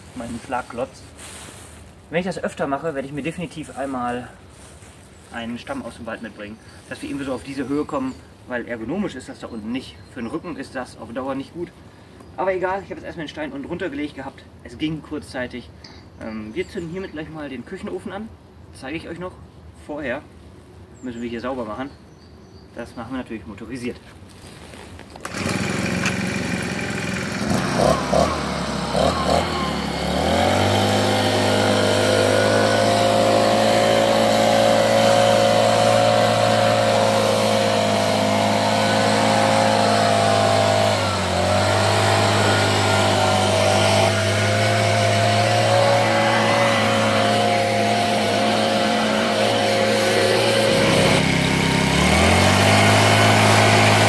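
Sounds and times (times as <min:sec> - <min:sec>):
leaf blower running: 0:00.0 - 0:02.6, 0:25.1 - 0:54.0.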